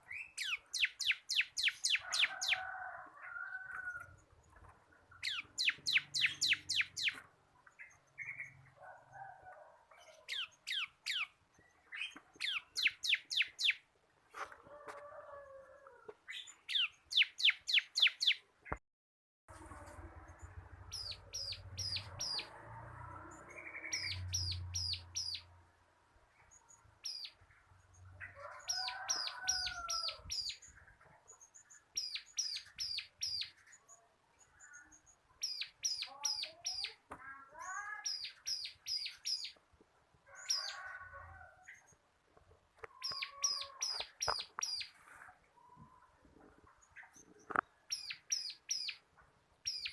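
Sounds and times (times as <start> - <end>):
lower calls of other birds: 0.0 - 8.6, 20.4 - 25.5, 26.5 - 37.0, 42.8 - 46.2, 46.8 - 49.9
bird singing rapid sharp notes: 4.5 - 8.6, 20.3 - 22.5, 46.8 - 49.0, 49.6 - 49.9.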